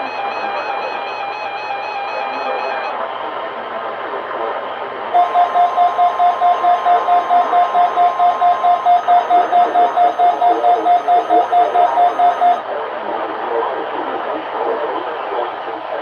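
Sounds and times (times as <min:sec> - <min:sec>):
rapid alert beeping: 0:00.0 - 0:02.9, 0:05.2 - 0:12.6
faint steady tone: 0:00.0 - 0:03.0, 0:05.2 - 0:12.6.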